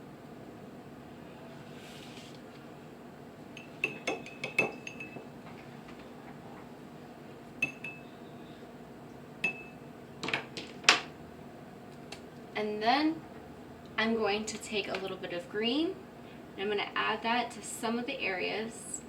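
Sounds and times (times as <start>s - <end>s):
paintbrush clinking on a dish: 3.6s - 5.3s, 7.6s - 8.1s, 9.4s - 9.8s.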